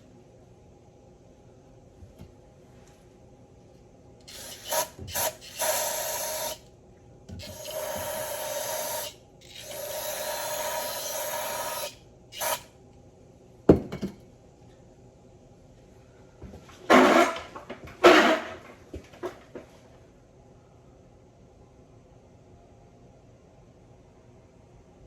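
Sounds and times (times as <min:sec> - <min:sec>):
air nozzle hissing: 0:04.3 - 0:06.6, 0:11.5 - 0:12.6.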